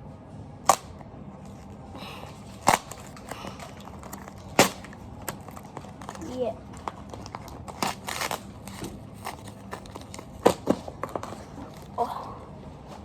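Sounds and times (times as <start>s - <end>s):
wrapping snapping and crackling: 0.6s - 12.1s
faint rustling of wrapping: 1.4s - 13.0s.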